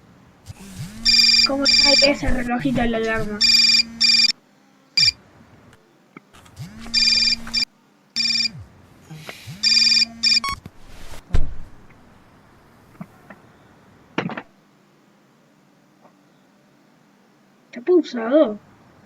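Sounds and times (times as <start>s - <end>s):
electronic alarm beeping: 1.0s - 2.2s, 3.4s - 4.4s, 6.9s - 8.6s, 9.6s - 10.6s
loud thud: 11.2s - 11.8s.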